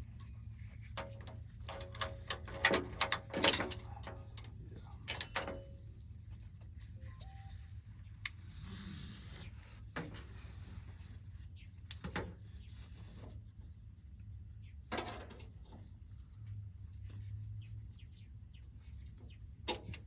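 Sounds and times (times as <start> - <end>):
low steady hum: 0.0 - 20.0
hand tool clicks and rattles: 1.0 - 5.6.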